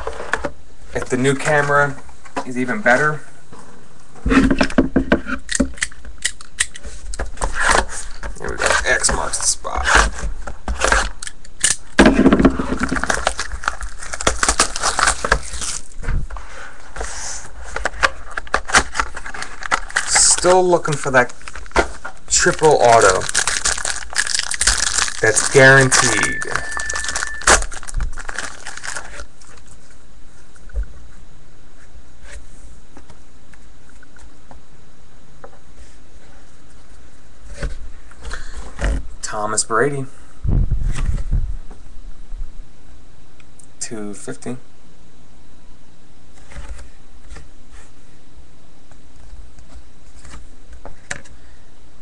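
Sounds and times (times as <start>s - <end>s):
steady low hum: 0.0s - 52.0s
plastic wrap crackling: 12.7s - 16.0s, 18.4s - 29.7s.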